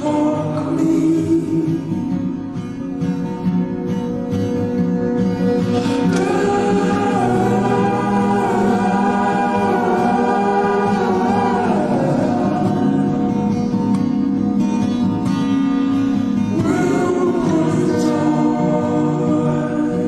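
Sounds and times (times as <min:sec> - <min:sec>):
wordless harmonised singing: 0:05.7 - 0:14.7, 0:16.2 - 0:20.0.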